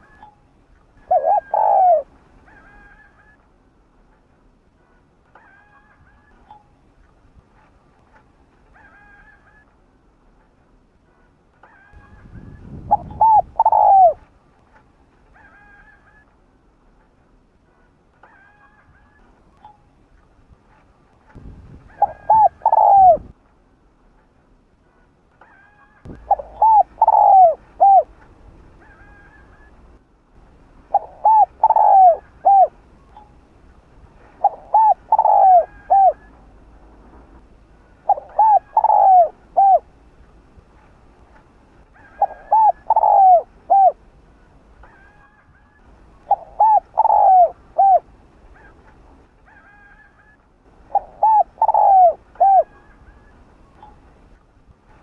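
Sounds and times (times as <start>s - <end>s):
dove cooing: 1.0s - 3.4s, 12.6s - 14.2s, 21.8s - 23.3s, 26.1s - 28.2s, 30.9s - 33.2s, 34.2s - 36.5s, 38.0s - 39.9s, 42.0s - 44.0s, 46.2s - 48.8s, 49.5s - 54.0s.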